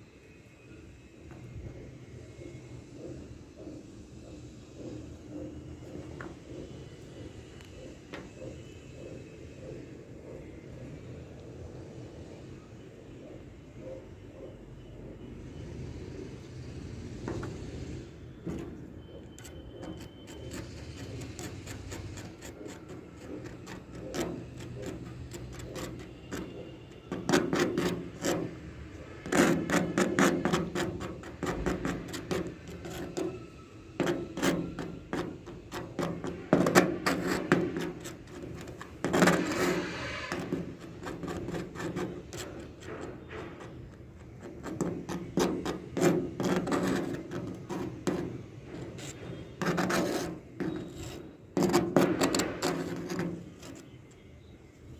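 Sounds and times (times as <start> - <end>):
hand tool scraping and tapping metal: 18.4 - 54.2.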